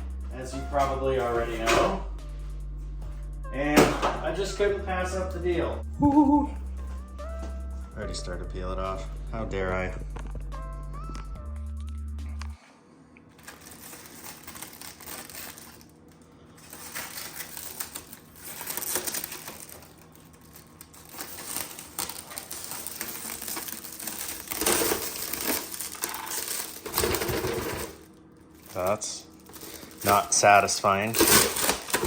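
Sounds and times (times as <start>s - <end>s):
plastic film crackling as peeled: 13.4s - 27.4s, 28.0s - 32.0s.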